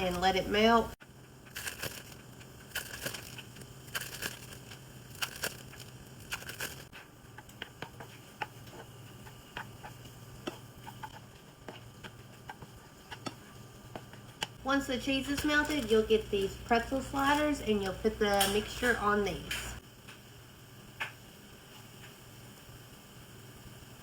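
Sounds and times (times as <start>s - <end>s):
plastic wrappers crinkling: 1.5s - 6.9s.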